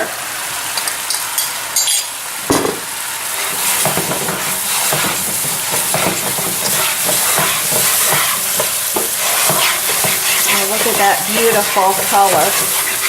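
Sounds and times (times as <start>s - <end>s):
paste sizzling in a frying pan: 0.0s - 13.0s
utensil scraping a pan: 3.4s - 13.0s.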